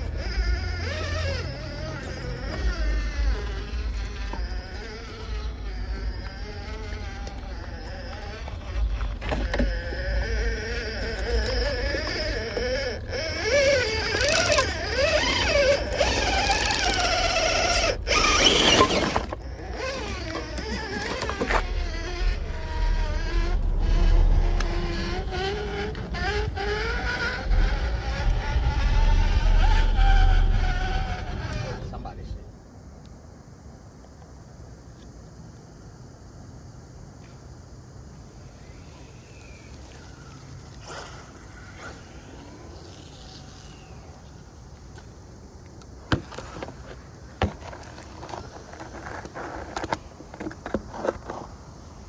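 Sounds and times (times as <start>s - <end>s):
electric motor whining: 0.0s - 32.4s
low rumble: 21.4s - 32.6s.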